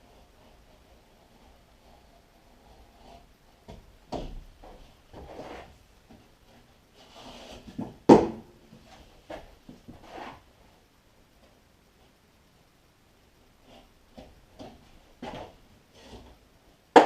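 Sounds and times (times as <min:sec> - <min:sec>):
scraping on drywall: 0:05.1 - 0:05.8, 0:09.9 - 0:10.4
knocks on drywall: 0:07.8 - 0:08.5.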